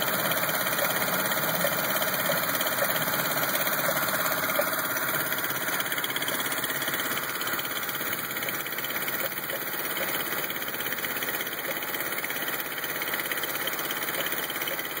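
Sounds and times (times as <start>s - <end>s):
car engine idling roughly: 0.0s - 15.0s.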